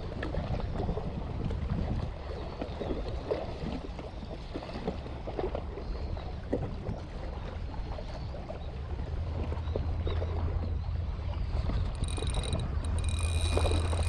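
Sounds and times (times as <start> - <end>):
water lapping against breakwater: 0.0 - 14.0
low steady rumble: 8.8 - 14.0.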